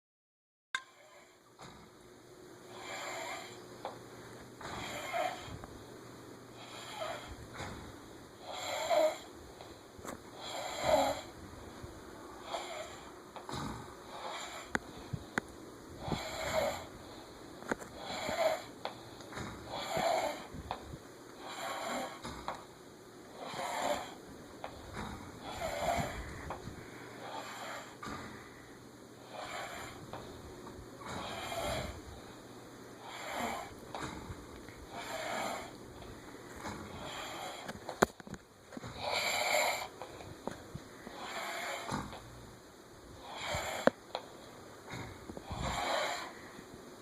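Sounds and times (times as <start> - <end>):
people snoring: 2.7 - 4.0, 4.6 - 5.6, 6.6 - 7.8, 8.4 - 9.3, 10.3 - 11.4, 12.4 - 15.3, 16.0 - 17.2, 17.9 - 20.8, 21.4 - 22.6, 23.3 - 30.3, 31.0 - 32.2, 33.0 - 38.0, 38.8 - 40.2, 41.0 - 42.2, 43.2 - 44.2, 44.8 - 46.6.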